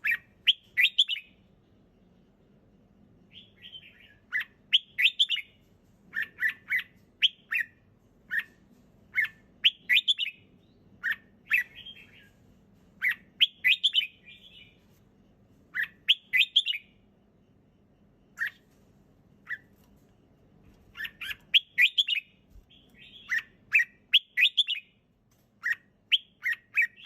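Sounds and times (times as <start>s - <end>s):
bird singing whistled notes: 0.0s - 1.4s, 3.3s - 8.5s, 9.1s - 12.4s, 13.0s - 14.8s, 15.8s - 17.0s, 21.0s - 25.0s, 25.6s - 27.0s.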